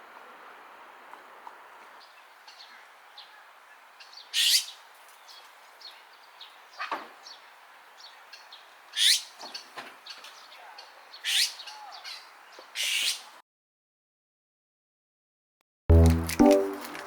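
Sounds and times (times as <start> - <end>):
wild birds chirping: 0.0 - 13.4
loud harsh bird calls: 1.9 - 13.4.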